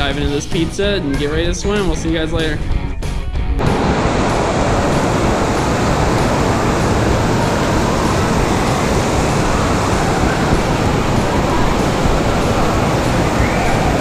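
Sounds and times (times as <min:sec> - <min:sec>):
loud steady rushing noise: 0:03.6 - 0:14.0.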